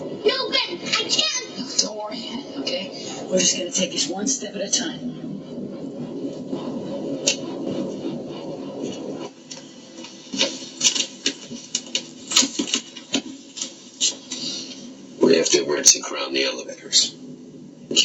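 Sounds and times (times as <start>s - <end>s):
low rumble: 0.0s - 13.6s.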